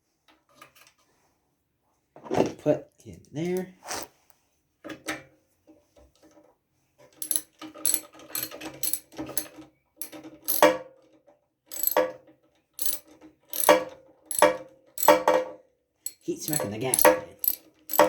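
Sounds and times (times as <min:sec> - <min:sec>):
ratchet wrench clicking: 0:07.2 - 0:10.7, 0:11.7 - 0:12.1, 0:12.8 - 0:15.3, 0:16.1 - 0:18.0.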